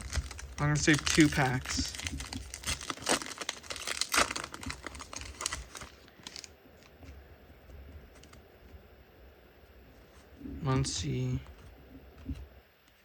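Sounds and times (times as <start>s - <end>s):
plastic wrapper crinkling and tearing: 0.0s - 7.0s.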